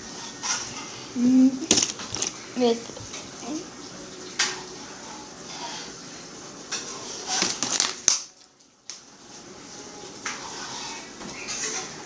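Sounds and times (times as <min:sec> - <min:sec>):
crunching and rustling handling noise: 0:01.7 - 0:03.2.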